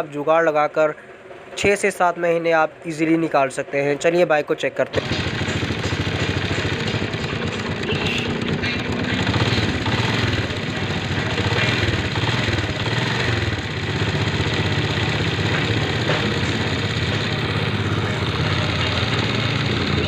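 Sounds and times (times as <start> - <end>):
small motorcycle engine idling: 5.0 - 20.0.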